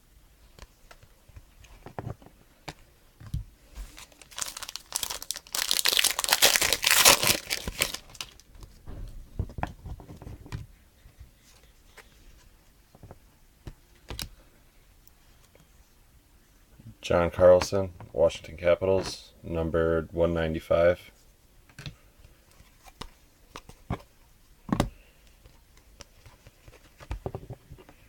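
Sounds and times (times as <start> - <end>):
wrapper tearing and crinkling: 3.8 - 8.5.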